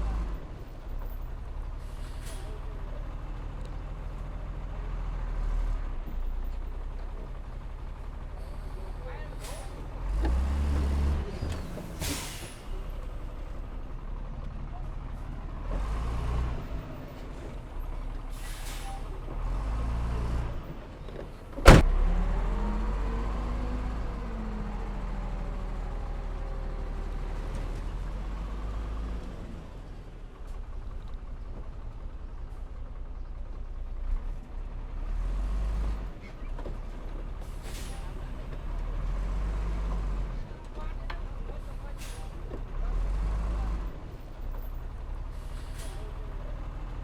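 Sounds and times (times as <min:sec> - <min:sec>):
heavy diesel machinery rumbling: 0:00.0 - 0:47.0
short hisses: 0:12.0 - 0:12.7
loud metal bang: 0:21.6 - 0:21.8.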